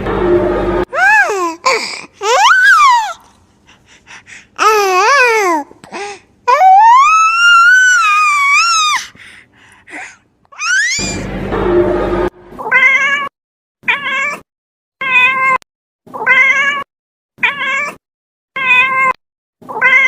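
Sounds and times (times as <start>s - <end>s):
baby crying: 0.9s - 3.4s, 4.0s - 11.2s
baby whimpering: 0.9s - 11.2s.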